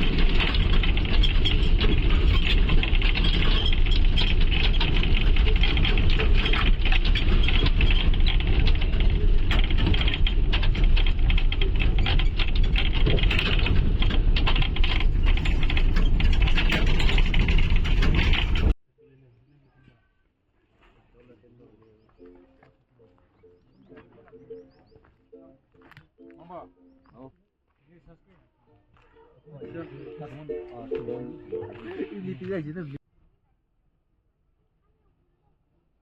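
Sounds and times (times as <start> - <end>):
rattles and clicks: 0.0 - 18.8
vehicle rumbling: 0.0 - 18.8.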